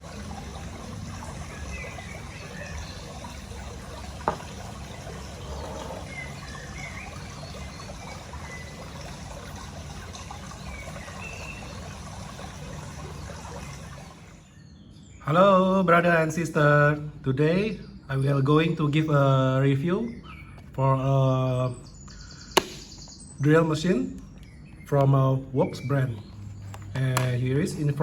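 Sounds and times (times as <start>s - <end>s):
sharp click: 22.6s - 23.0s.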